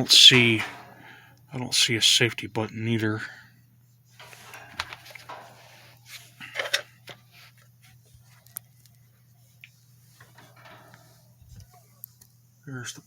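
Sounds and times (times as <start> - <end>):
heater being handled: 0.0 - 1.2, 4.1 - 9.0, 9.6 - 12.4.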